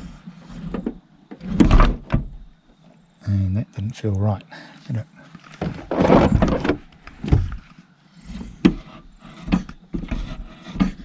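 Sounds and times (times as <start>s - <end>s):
sliding door scraping on rail: 0.0s - 2.1s, 5.7s - 6.7s.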